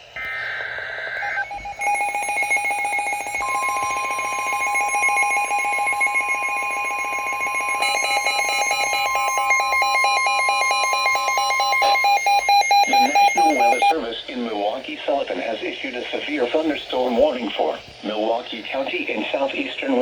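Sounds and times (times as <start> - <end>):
warbling data tones: 0.0 - 13.9
steady warning tone: 0.0 - 14.1
rapid pulsing alert beeps: 0.2 - 13.9
second radio beeping: 0.2 - 13.9.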